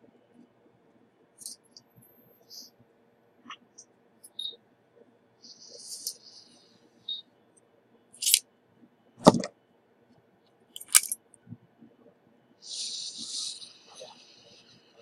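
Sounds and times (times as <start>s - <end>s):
small tools clicking and tapping: 10.8s - 11.2s
short hiss: 12.7s - 14.6s.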